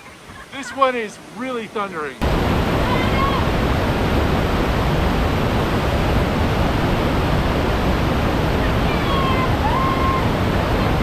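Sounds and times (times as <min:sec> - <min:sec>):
waterfall thundering: 0:00.0 - 0:11.0.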